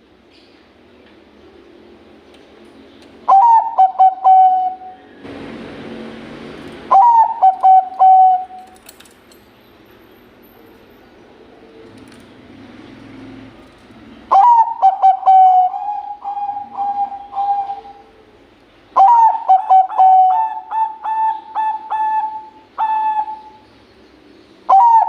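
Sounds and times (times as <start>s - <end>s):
dove cooing: 3.3s - 5.0s, 6.9s - 8.8s, 14.2s - 18.4s, 19.0s - 23.6s, 24.7s - 25.0s.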